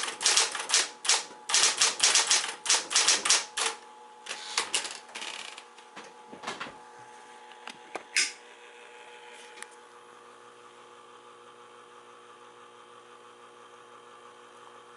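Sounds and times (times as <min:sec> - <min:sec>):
typewriter key strikes: 0:00.0 - 0:03.8
typewriter clatter: 0:00.0 - 0:05.4.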